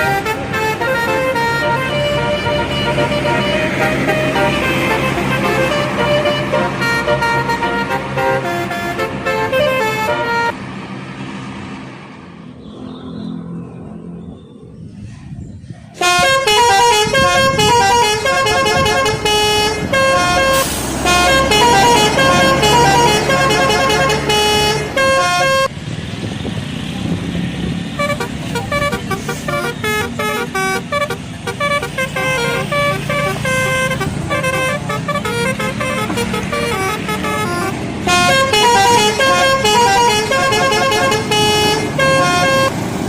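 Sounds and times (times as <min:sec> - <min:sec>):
melodic air horn tooting: 0:00.0 - 0:10.6, 0:16.0 - 0:25.7, 0:28.0 - 0:42.8
low engine hum: 0:16.0 - 0:43.0.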